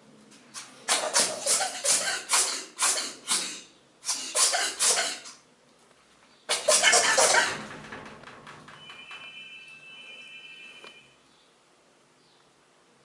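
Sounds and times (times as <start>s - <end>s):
ferret sneezing: 0.6s - 5.4s, 6.5s - 7.5s.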